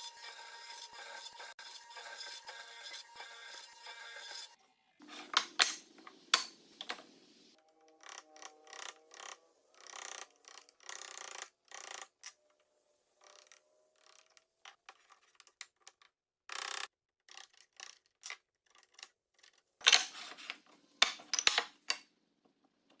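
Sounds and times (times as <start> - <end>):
scraping strokes on wood: 0.0 - 6.9.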